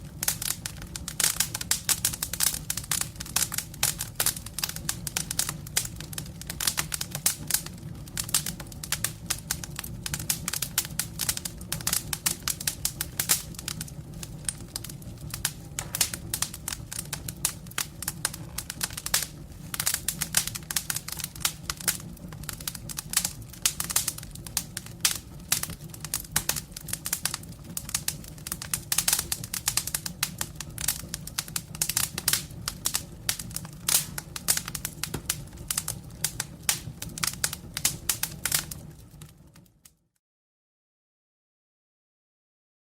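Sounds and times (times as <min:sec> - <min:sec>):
low rumble of flames: 0:00.0 - 0:39.9
wood fire crackling: 0:00.0 - 0:40.0.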